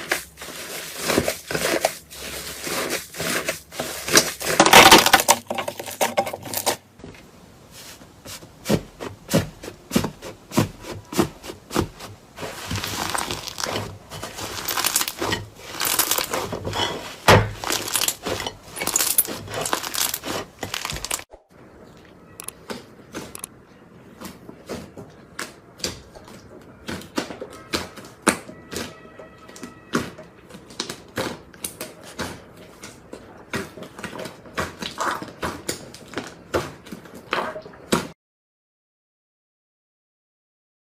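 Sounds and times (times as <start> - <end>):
slime clicking and crackling: 9.3 - 16.5, 17.4 - 21.3.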